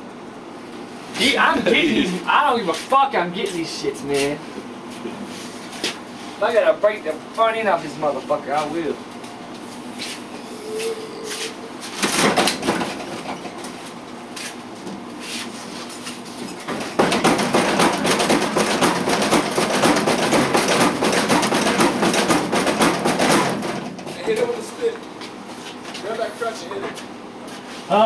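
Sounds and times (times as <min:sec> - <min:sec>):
knocks on vending machine: 0:12.0 - 0:13.4, 0:16.7 - 0:24.1
vending machine rattling: 0:16.6 - 0:24.6.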